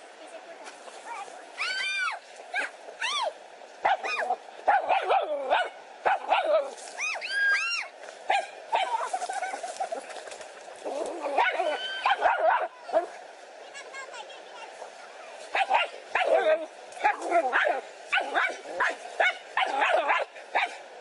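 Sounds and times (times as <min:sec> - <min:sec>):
dog barking and yipping: 0:03.8 - 0:06.6, 0:08.3 - 0:09.6, 0:11.4 - 0:12.8, 0:15.5 - 0:20.8.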